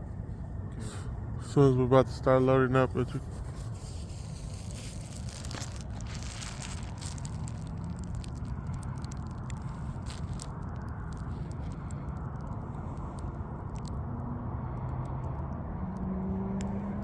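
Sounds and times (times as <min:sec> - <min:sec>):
steady low rumble: 0:00.0 - 0:17.0
handling noise clicks and crackles: 0:03.2 - 0:16.8.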